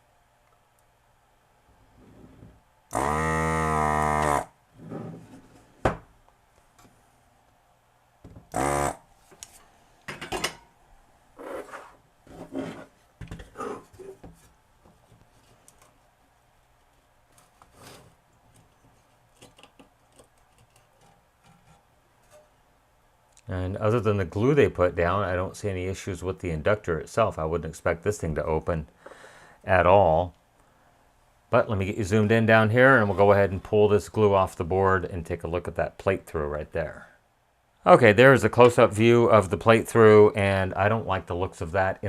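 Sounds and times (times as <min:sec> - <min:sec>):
desoldering gun vacuum pump buzzing: 0:02.9 - 0:04.6, 0:08.5 - 0:09.1.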